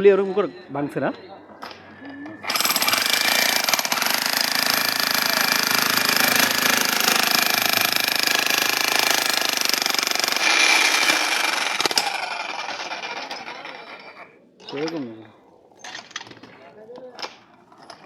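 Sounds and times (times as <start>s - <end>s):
demolition breaker hammering concrete: 2.5s - 13.4s.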